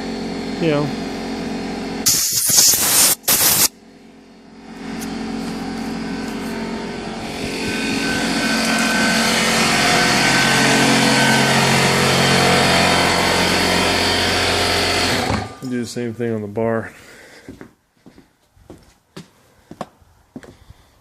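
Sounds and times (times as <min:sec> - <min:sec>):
air compressor motor running: 0:00.0 - 0:15.6.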